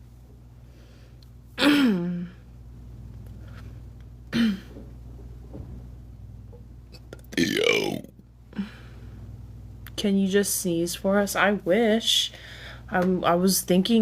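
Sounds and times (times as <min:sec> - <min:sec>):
woman making throaty noises: 0:07.0 - 0:08.2.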